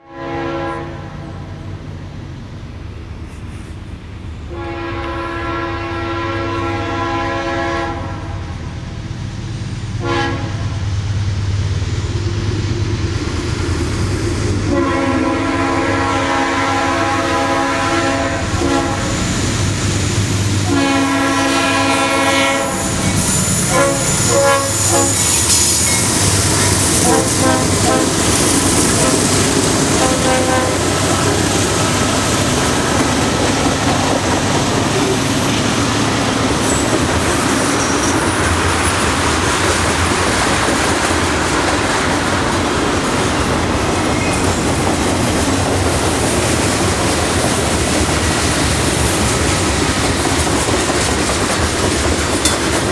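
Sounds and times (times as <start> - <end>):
locomotive air horn blasts: 0.0 - 1.6, 4.5 - 8.6, 10.0 - 10.8, 14.7 - 19.3, 20.6 - 25.7, 26.4 - 31.4
freight cars rolling past: 0.4 - 52.9.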